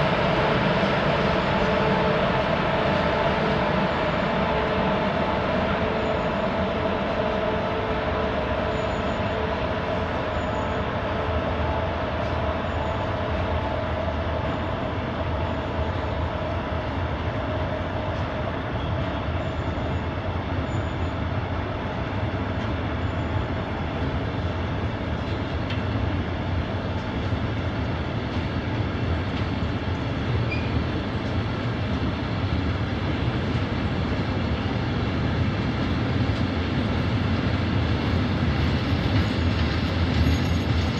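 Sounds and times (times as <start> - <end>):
steady hum: 0.0 - 30.0
freight train wheels rumbling: 0.0 - 40.9.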